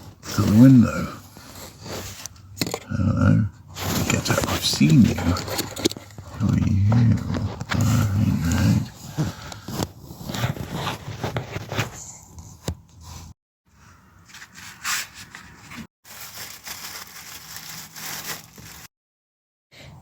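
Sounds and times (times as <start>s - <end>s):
plastic parts rubbing and scraping: 0.0s - 3.0s, 3.7s - 12.1s.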